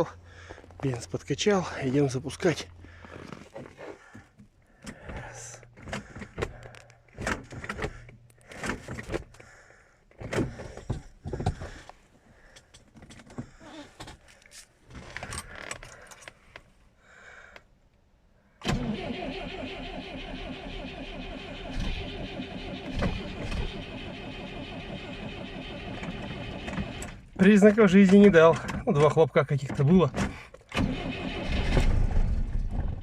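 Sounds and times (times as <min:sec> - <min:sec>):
clunks and rattles: 0:02.9 - 0:14.3, 0:22.7 - 0:25.1, 0:25.8 - 0:33.0
car starter motor cranking: 0:18.6 - 0:27.3, 0:30.7 - 0:32.2.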